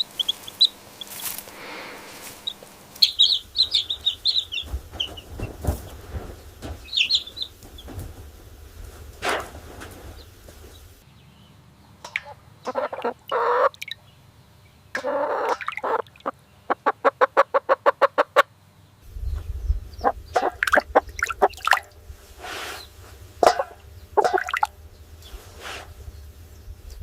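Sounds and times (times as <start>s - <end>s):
chickens clucking: 0.0s - 11.0s, 12.0s - 14.0s, 14.9s - 18.6s, 19.2s - 27.0s.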